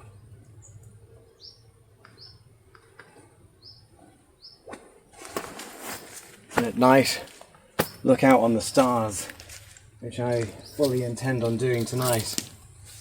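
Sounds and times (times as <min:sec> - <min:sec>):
small bird chirping: 0:00.1 - 0:03.0, 0:03.6 - 0:04.7
clicks and rustles: 0:04.7 - 0:13.0.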